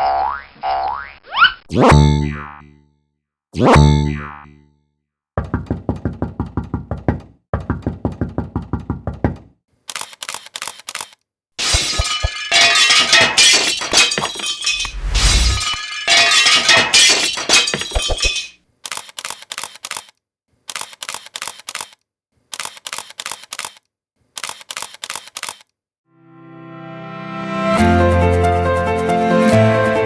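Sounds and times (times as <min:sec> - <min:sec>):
dishes or glass crashing: 0:11.6 - 0:18.6.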